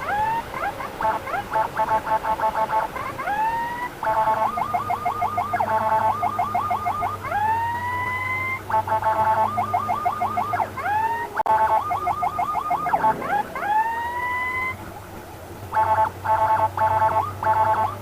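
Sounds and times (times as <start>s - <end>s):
ambulance siren switching patterns: 0.0s - 18.0s.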